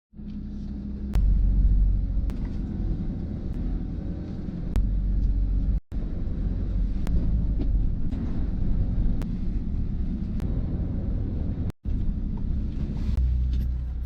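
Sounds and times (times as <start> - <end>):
boat engine rumbling: 0.1 - 14.0.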